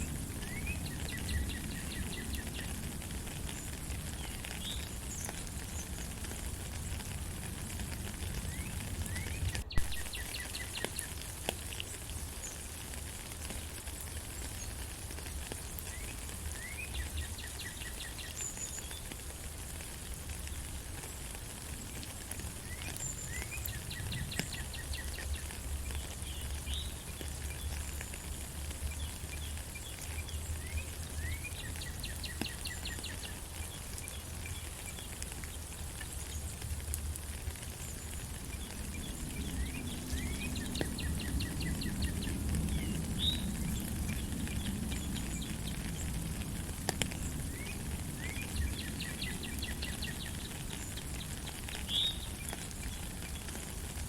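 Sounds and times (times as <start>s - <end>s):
rain falling in forest: 0.0s - 54.0s
birds singing: 0.4s - 2.8s, 3.5s - 6.1s, 8.5s - 11.2s, 15.7s - 19.1s, 22.6s - 36.6s, 37.8s - 46.2s, 47.1s - 53.6s.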